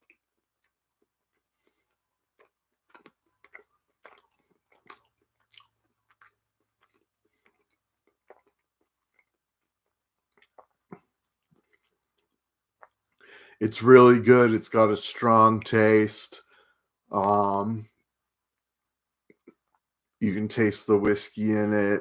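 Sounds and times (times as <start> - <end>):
chewing mouth clicks and smacks: 0.0 - 13.2, 18.6 - 19.9.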